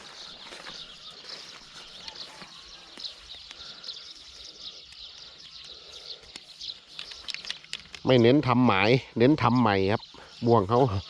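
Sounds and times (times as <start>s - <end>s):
faint clicks and rustles: 0.4s - 8.3s
insects chirping: 3.0s - 11.0s.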